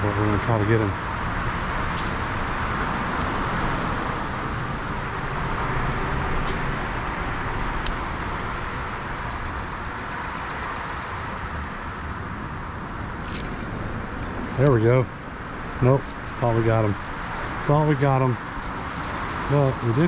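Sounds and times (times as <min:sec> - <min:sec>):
rushing noise with low rumble: 0:00.0 - 0:20.0.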